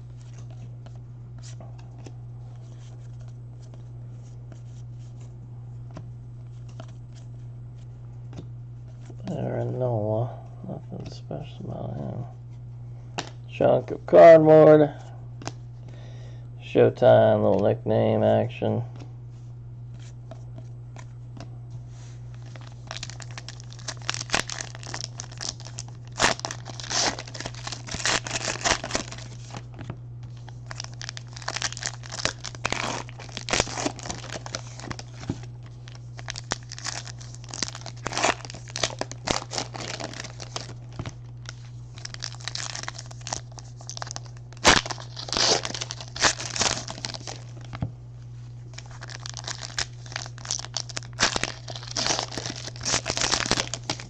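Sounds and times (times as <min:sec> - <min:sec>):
steady low hum: 0:00.0 - 0:54.0
wrappers tearing and crinkling: 0:22.3 - 0:29.7, 0:30.3 - 0:47.8, 0:48.7 - 0:54.0.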